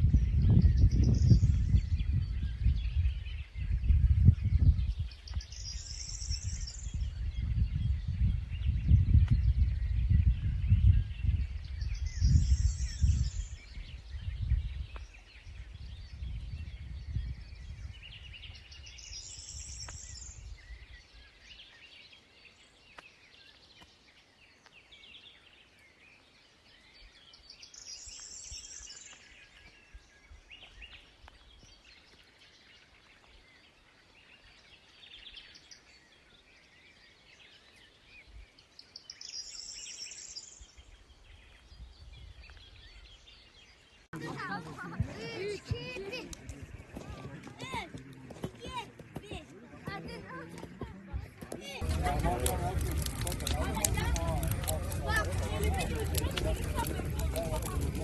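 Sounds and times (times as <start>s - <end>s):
songbirds singing: 0.0s - 58.0s
low rumbling noise: 51.8s - 58.0s.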